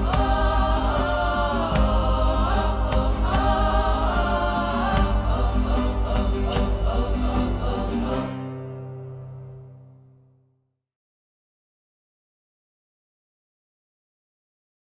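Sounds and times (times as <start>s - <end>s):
rapid low pulse: 0.0s - 9.3s
chant-like voices in music: 0.0s - 10.1s.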